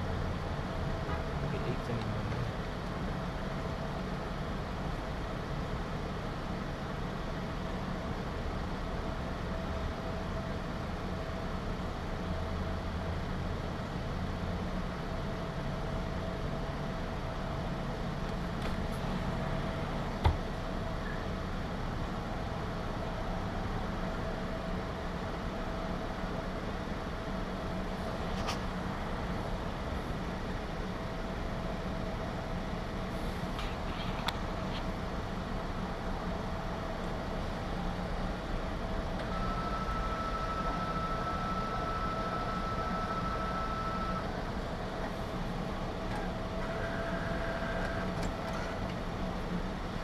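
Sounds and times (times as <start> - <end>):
low mechanical hum: 0.0 - 50.0.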